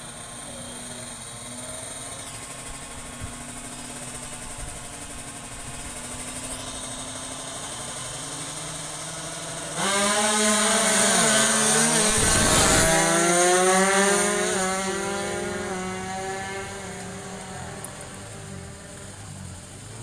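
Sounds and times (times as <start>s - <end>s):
two-stroke motorcycle engine buzzing: 0.0s - 20.0s.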